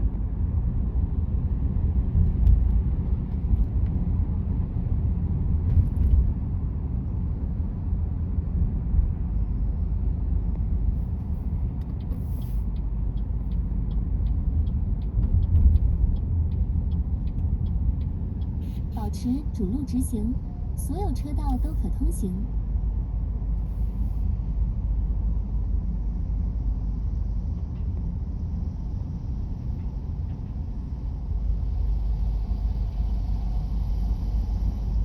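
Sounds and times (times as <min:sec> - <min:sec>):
road and tyre rumble: 0:00.0 - 0:35.0
light regular ticking: 0:11.8 - 0:19.3.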